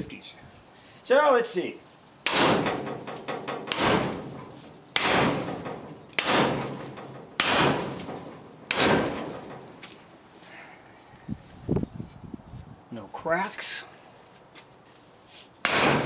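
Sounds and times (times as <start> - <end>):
sledgehammer striking steel beam: 2.2 - 9.9, 15.6 - 16.0.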